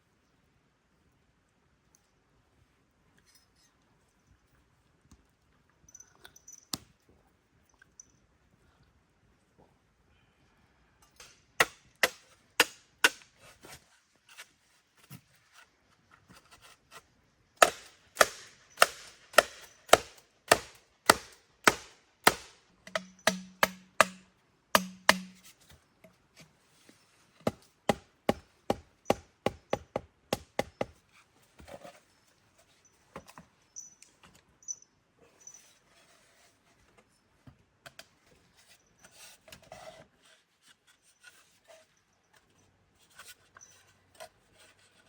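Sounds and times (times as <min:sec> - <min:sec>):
blade chopping blows: 0:17.6 - 0:24.2, 0:24.8 - 0:25.4.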